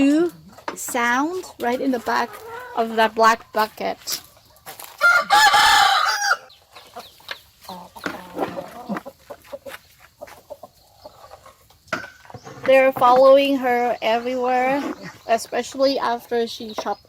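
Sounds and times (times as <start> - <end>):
chickens clucking: 0.0 - 17.0
rooster crowing: 5.0 - 6.5.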